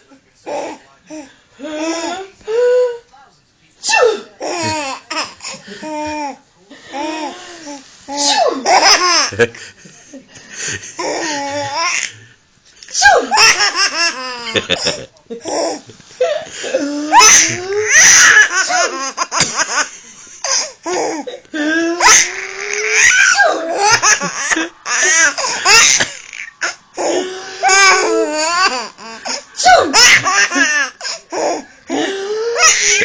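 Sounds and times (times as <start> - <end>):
baby laughing: 17.1 - 21.2, 22.0 - 31.6.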